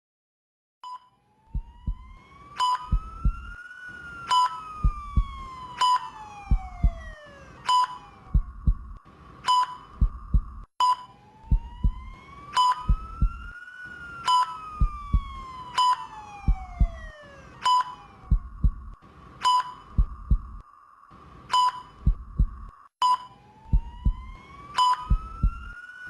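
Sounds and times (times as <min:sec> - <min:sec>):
gliding tone rising and falling: 0:01.4 - 0:08.4, 0:11.3 - 0:18.7
heartbeat thump: 0:01.5 - 0:02.2, 0:02.8 - 0:03.6, 0:04.8 - 0:05.6, 0:06.4 - 0:07.2, 0:07.8 - 0:09.0, 0:09.9 - 0:10.7, 0:11.5 - 0:13.5, 0:14.8 - 0:15.6, 0:16.4 - 0:17.2, 0:18.2 - 0:19.0, 0:19.9 - 0:20.6, 0:21.6 - 0:22.8, 0:23.7 - 0:24.4, 0:25.0 - 0:25.8
patient monitor beeps: 0:02.6 - 0:03.4, 0:04.3 - 0:08.8, 0:09.4 - 0:11.6, 0:12.6 - 0:13.2, 0:14.2 - 0:15.2, 0:15.8 - 0:17.0, 0:17.6 - 0:20.6, 0:21.5 - 0:24.2, 0:24.8 - 0:25.5.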